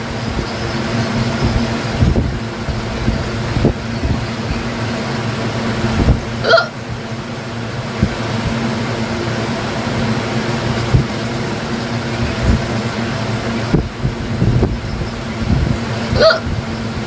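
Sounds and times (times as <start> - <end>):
steady background hum: 0.0 - 17.0
woman hiccuping: 6.4 - 6.8, 16.2 - 16.5.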